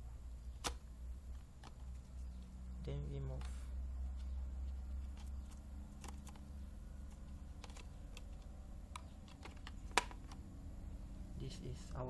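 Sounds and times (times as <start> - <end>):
hard drive clicking when handled: 5.0 - 10.5.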